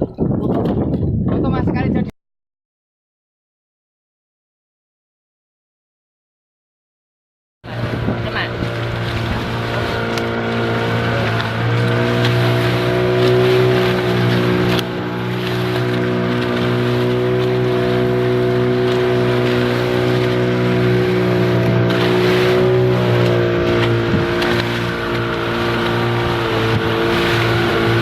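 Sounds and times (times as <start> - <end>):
boat engine running: 0.0 - 2.1, 7.6 - 28.0.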